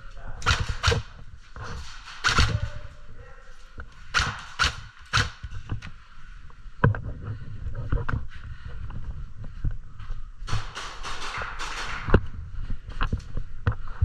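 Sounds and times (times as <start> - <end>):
low thumping footsteps: 0.0 - 14.0
airsoft guns firing: 0.4 - 1.2, 2.0 - 2.9, 4.1 - 5.4, 10.5 - 12.3.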